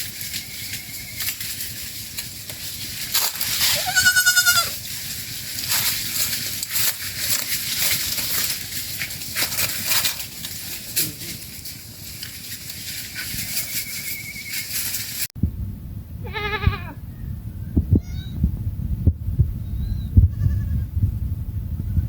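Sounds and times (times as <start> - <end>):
rustling and crackling: 0.0 - 15.3
thin whistle-like tone: 0.3 - 1.3, 13.4 - 14.8
goat bleating: 3.6 - 4.8, 16.2 - 17.0, 20.3 - 20.9.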